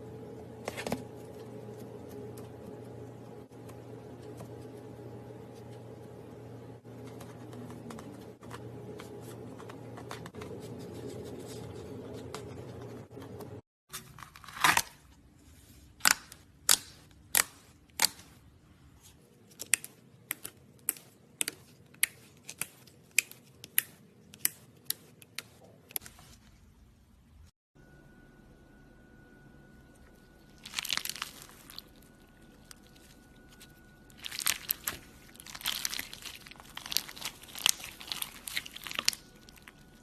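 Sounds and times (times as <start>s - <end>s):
steady low hum: 0.0s - 13.6s, 27.2s - 40.0s.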